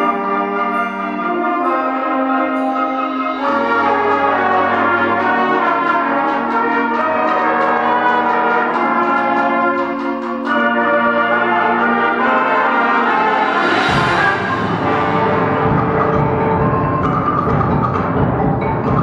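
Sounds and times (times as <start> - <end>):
bell-like percussion ringing: 0.0 - 7.1, 12.3 - 19.0
concert band playing chords: 0.0 - 19.0.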